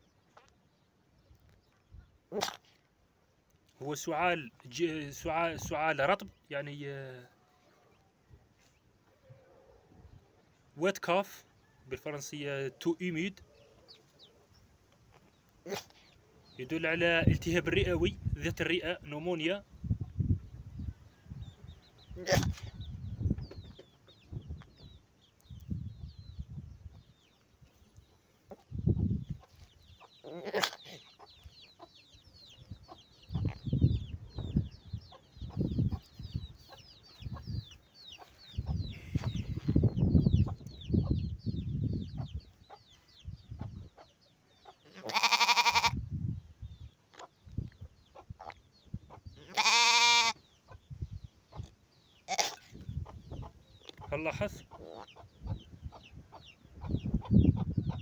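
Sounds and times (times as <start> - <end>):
lamb coughing: 30.3 - 31.1, 52.3 - 52.7
sheep bleating loudly: 44.9 - 46.0, 49.4 - 50.4.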